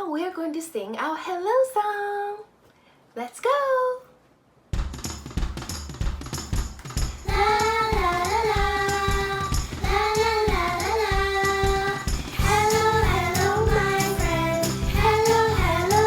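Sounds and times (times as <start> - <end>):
bass and drum beat: 4.8 - 16.0
high voice singing: 7.3 - 16.0.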